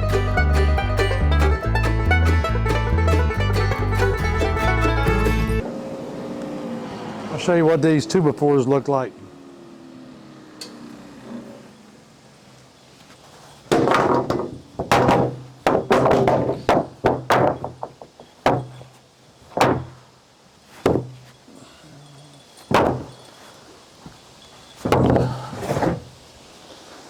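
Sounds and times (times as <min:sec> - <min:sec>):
wooden boards clattering together: 0:13.6 - 0:20.1, 0:20.8 - 0:21.3, 0:22.7 - 0:23.3, 0:24.8 - 0:26.2.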